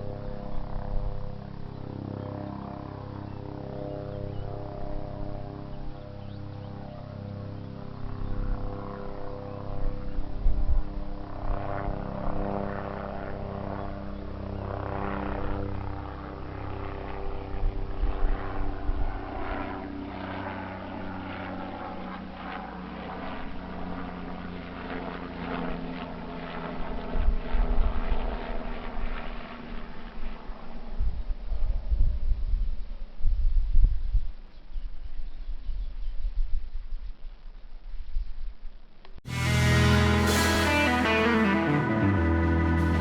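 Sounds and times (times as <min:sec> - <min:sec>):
helicopter engine and rotor: 0:11.2 - 0:15.3.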